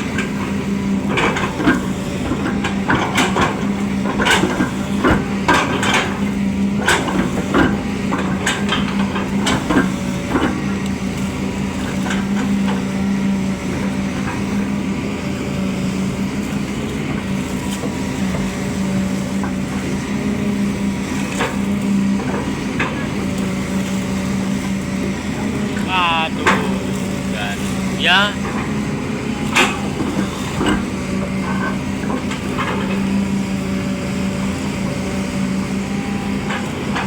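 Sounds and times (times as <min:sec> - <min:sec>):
excavator diesel engine running: 0:22.2 - 0:37.0.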